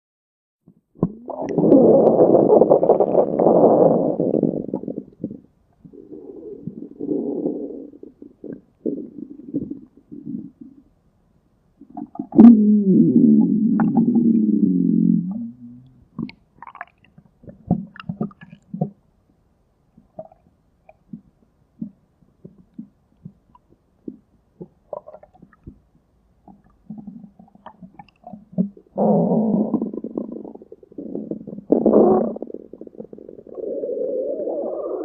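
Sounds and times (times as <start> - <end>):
stomach gurgles and pops: 0.6 - 10.8, 11.8 - 19.0, 20.0 - 35.0
loud stomach rumble: 0.7 - 10.8, 11.8 - 16.8, 26.9 - 35.0.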